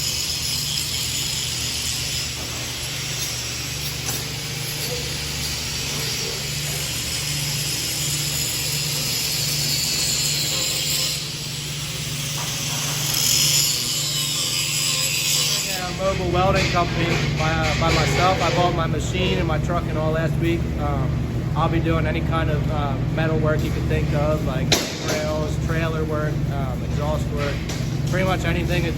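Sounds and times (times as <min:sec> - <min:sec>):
arc welding hiss: 0:00.0 - 0:16.0
low machine hum: 0:00.0 - 0:28.9.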